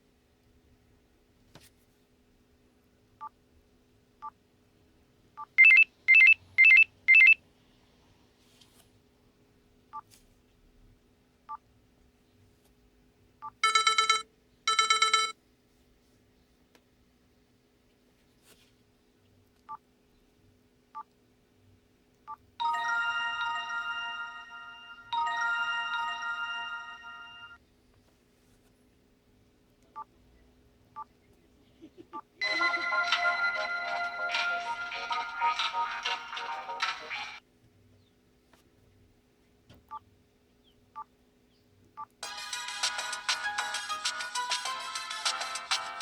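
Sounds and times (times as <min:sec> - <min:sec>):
phone key beeps: 0:05.6 - 0:07.4
warbling phone ringtone: 0:13.6 - 0:15.3, 0:22.6 - 0:27.6
phone ringtone melody: 0:13.6 - 0:15.4, 0:22.6 - 0:27.6, 0:32.4 - 0:35.9, 0:42.2 - 0:46.0.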